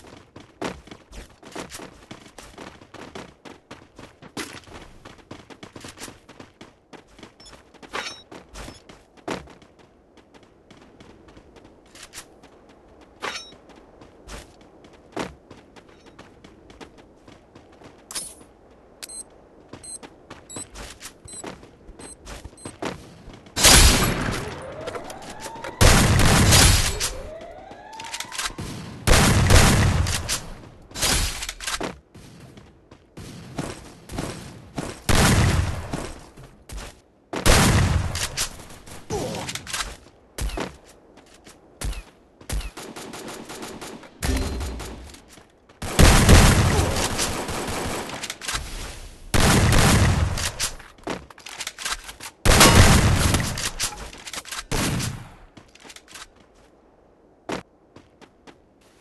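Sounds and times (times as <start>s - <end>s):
rising whistle-like glides: 24.4s - 25.9s.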